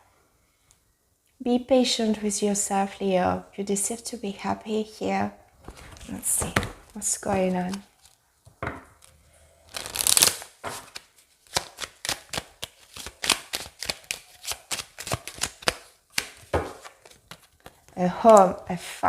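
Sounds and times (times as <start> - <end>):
cards being shuffled: 5.6 - 8.2, 9.7 - 18.0.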